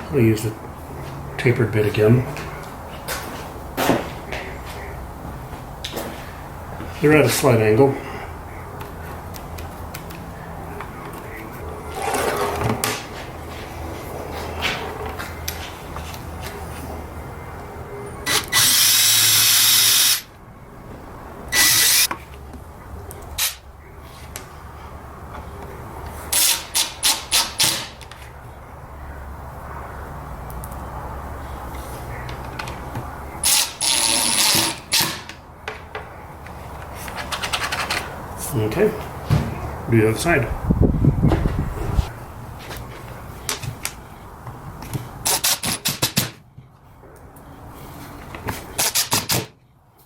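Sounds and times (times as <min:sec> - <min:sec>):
power drill drilling: 0:18.3 - 0:20.2, 0:21.6 - 0:22.1, 0:33.4 - 0:35.0.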